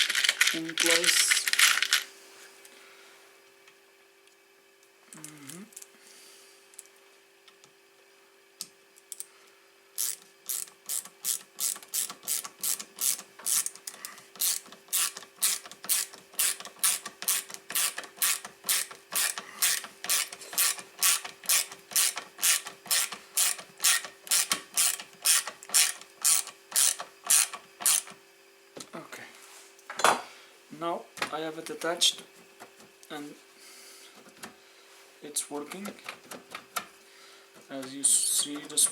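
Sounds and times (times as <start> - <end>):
hand ratchet clicking: 10.0 - 28.2.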